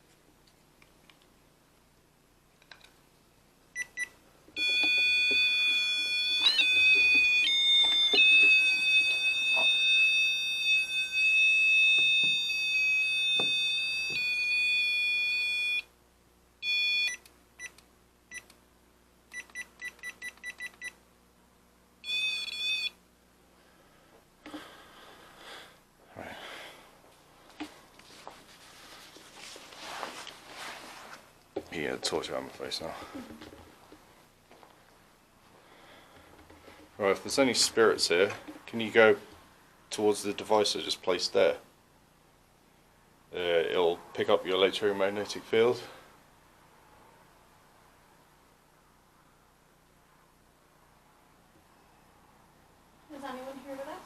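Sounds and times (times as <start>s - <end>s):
electronic alarm tone: 4.6s - 15.9s, 16.6s - 17.2s, 22.0s - 23.0s.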